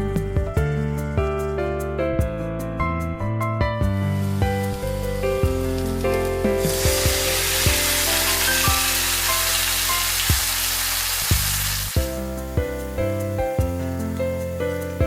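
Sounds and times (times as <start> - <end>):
background music: 0.0 - 15.0
food sizzling in a frying pan: 4.2 - 15.0.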